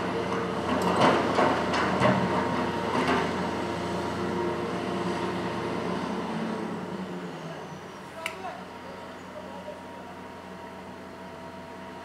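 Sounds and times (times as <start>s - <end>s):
excavator diesel engine running: 0.0s - 8.0s.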